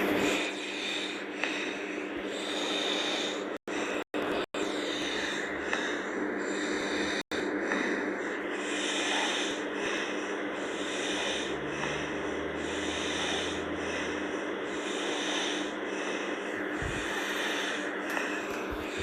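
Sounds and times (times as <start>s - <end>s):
steady hum: 0.0s - 19.0s
girl snoring: 10.6s - 17.8s.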